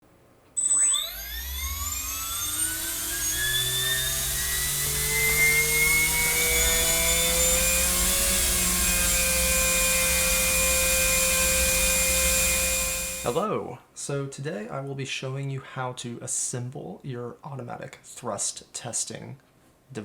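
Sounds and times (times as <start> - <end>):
electric motor propeller whine: 0.6 - 13.4.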